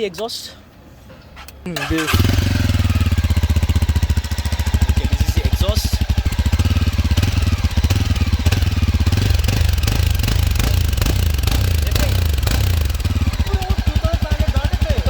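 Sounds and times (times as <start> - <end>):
motorcycle engine idling and revving: 1.8 - 15.0.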